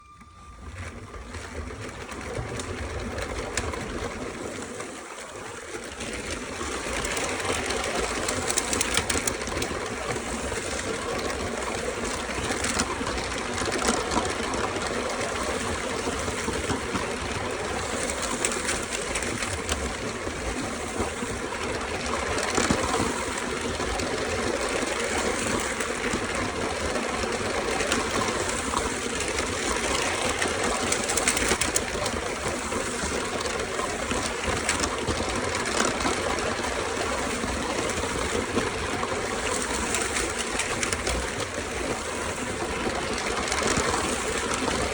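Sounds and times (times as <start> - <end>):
wheel clicks on plastic track: 0.0 - 44.9
toy train motor whir: 6.8 - 13.0, 27.4 - 38.8.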